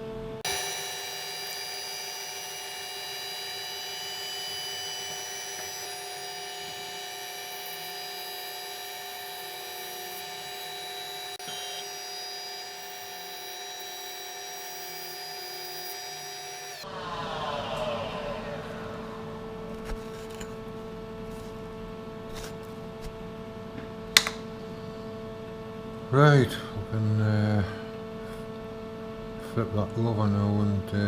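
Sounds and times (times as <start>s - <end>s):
drilling machine whining: 0.4s - 16.9s.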